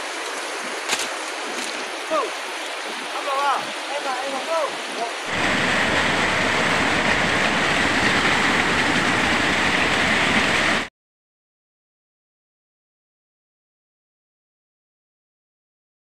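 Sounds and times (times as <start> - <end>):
rushing river water: 0.0 - 10.9.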